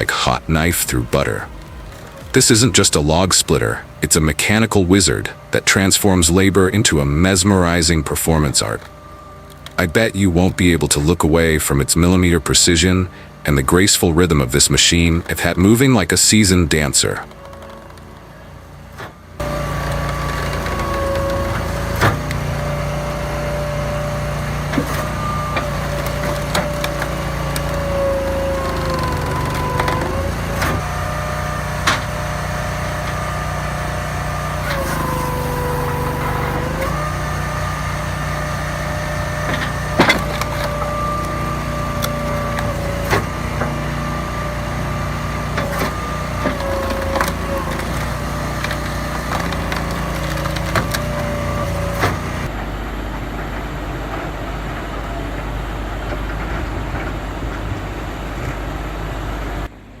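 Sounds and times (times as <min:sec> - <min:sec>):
wood splitting cracks: 0:00.0 - 0:05.4, 0:19.4 - 0:52.5
log splitter engine running: 0:00.0 - 1:00.0.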